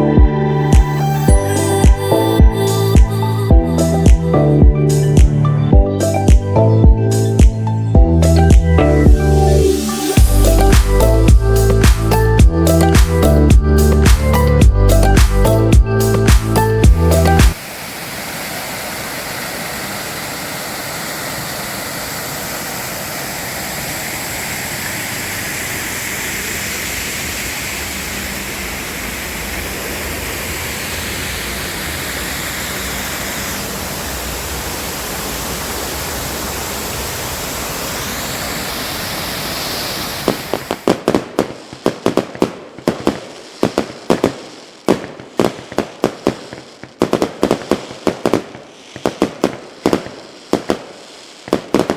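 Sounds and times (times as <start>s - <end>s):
steady rushing noise: 8.2s - 42.0s.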